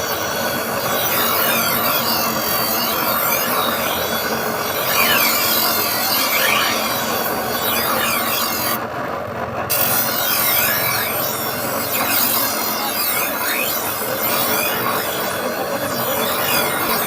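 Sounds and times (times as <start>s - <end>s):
file rasping on steel blade: 0.0s - 8.8s, 9.7s - 17.0s.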